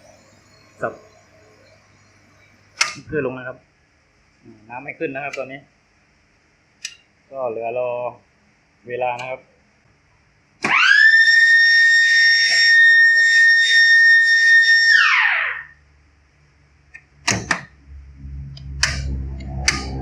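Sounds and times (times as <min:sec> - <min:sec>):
low steady hum: 0:00.0 - 0:10.6, 0:15.7 - 0:20.0
motor-driven siren wailing: 0:10.7 - 0:15.8, 0:17.8 - 0:20.0
sharp clicks: 0:18.5 - 0:20.0.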